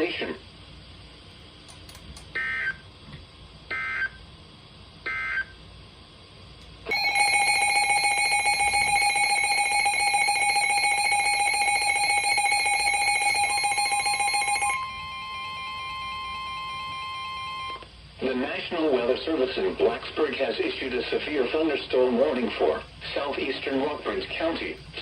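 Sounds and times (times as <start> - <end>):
steady attention tone: 6.8 - 18.6.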